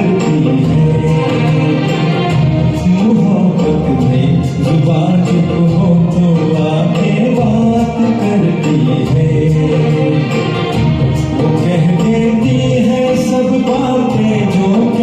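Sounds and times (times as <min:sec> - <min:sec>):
person singing to karaoke track: 0:00.0 - 0:15.0.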